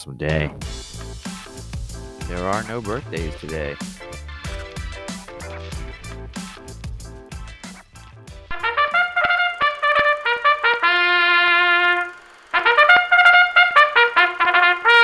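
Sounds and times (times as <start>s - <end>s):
drum-backed music bed: 0.0s - 9.2s
trumpet fanfare: 8.5s - 15.0s.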